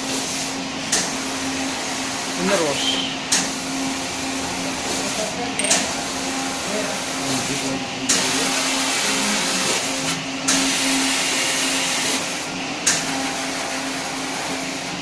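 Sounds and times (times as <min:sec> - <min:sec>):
water jets hissing: 0:00.0 - 0:12.4
sharp machine click: 0:05.6 - 0:05.9.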